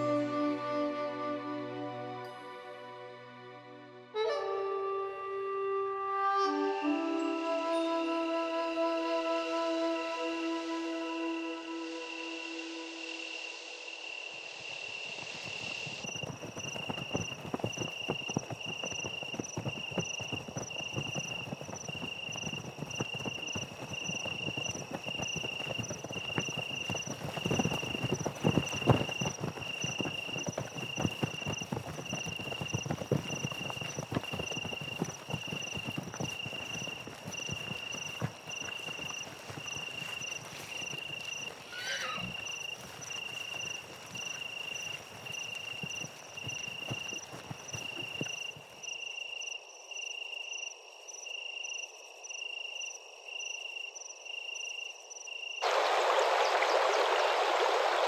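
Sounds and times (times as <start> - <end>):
insect chirping: 4.8 - 57.3
horses' hooves clattering: 15.0 - 48.9.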